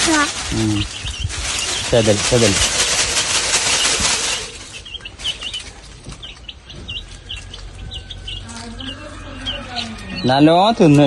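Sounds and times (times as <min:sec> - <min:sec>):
loud rustle: 0:00.0 - 0:06.5
chicks peeping: 0:00.0 - 0:11.0.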